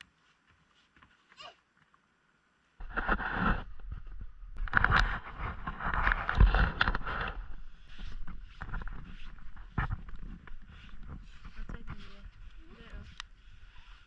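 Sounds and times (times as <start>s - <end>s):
scraping and crunching through snow: 2.8s - 14.0s.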